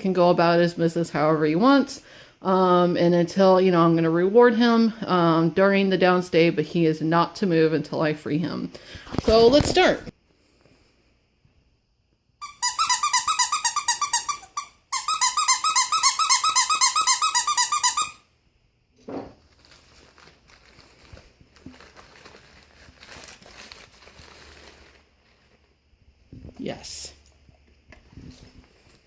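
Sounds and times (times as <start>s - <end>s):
squeaky dog toy squeaking: 12.4s - 18.3s.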